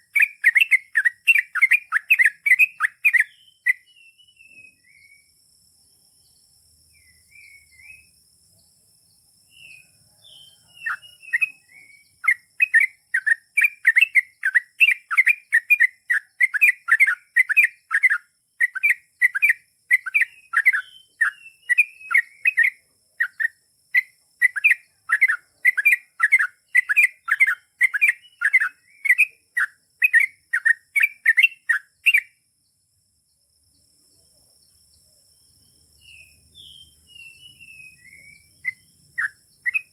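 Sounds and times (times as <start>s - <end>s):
bird chirping: 0.0s - 39.9s.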